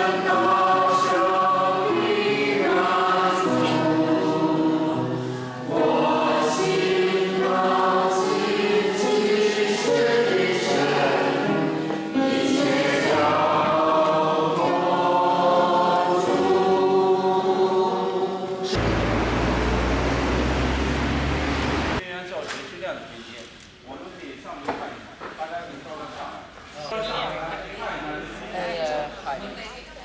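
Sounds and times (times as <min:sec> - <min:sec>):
choir singing a hymn: 0:00.0 - 0:22.0.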